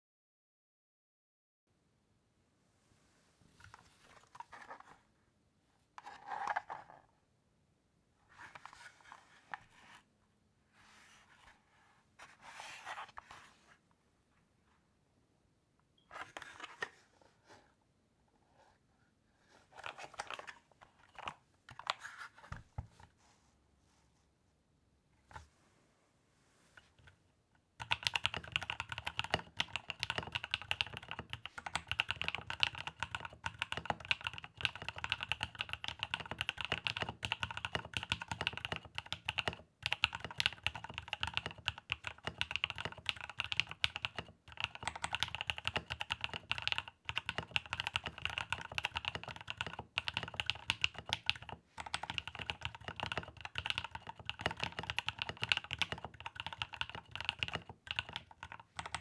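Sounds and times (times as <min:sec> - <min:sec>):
mechanical keyboard typing: 0:27.8 - 0:59.0.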